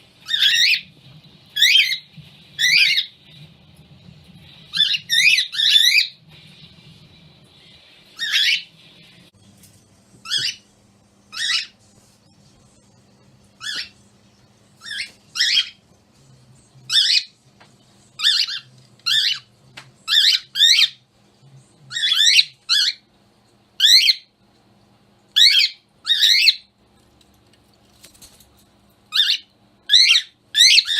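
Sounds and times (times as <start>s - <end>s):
cockatiel screeching: 0.2s - 0.8s, 1.6s - 2.0s, 2.6s - 3.1s, 4.7s - 6.1s, 8.2s - 8.6s, 10.2s - 10.6s, 11.3s - 11.8s, 13.6s - 13.9s, 14.8s - 15.8s, 18.2s - 19.4s, 20.1s - 21.0s, 23.8s - 24.3s, 25.4s - 26.6s, 29.1s - 30.9s.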